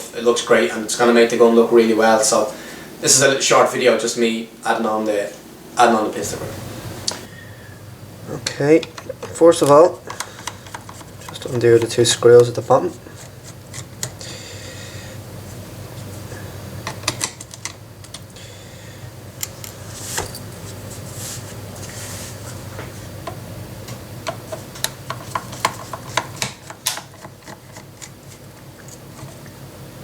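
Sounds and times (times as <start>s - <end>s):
clicks and taps of handled parts: 8.8s - 12.5s, 24.2s - 28.1s.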